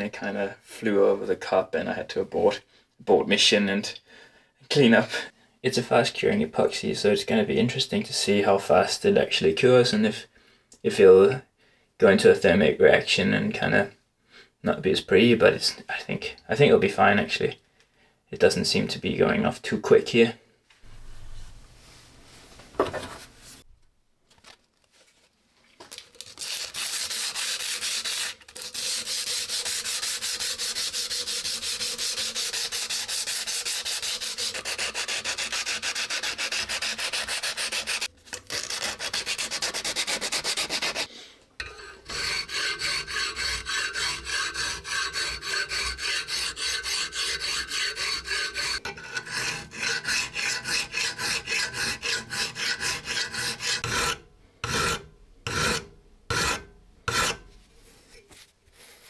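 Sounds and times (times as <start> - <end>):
hand sanding strokes: 26.4 - 54.1.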